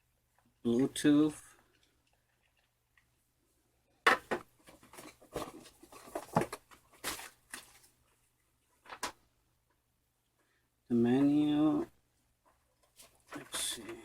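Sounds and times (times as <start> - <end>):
packaging clicks and rustles: 4.6 - 8.0.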